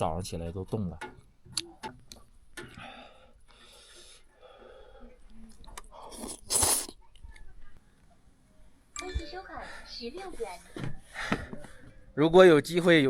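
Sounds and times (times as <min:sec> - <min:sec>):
person chewing food: 0:05.5 - 0:07.2.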